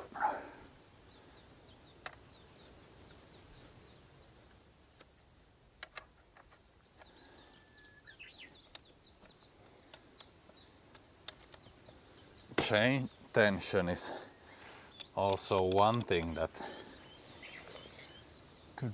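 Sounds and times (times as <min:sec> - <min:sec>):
songbird twittering: 0:00.8 - 0:04.7, 0:06.4 - 0:18.9
sharp clicks and knocks: 0:05.8 - 0:07.1, 0:08.6 - 0:12.8, 0:15.0 - 0:16.6.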